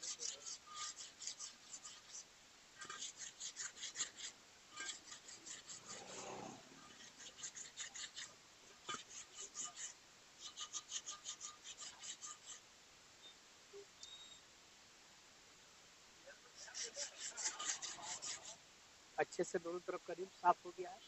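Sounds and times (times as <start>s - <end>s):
sandpaper scrubbing metal rim: 0.0s - 2.2s, 2.8s - 12.6s, 16.6s - 18.6s.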